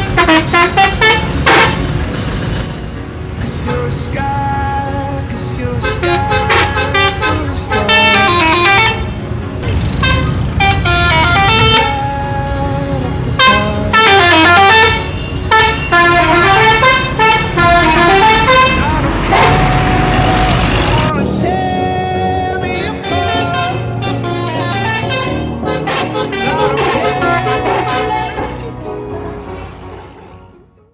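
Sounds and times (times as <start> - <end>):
musical air horns playing melody: 0.0 - 2.0, 5.8 - 9.2, 9.9 - 12.1, 13.3 - 21.1, 22.8 - 28.9
low engine rumble: 0.0 - 30.8.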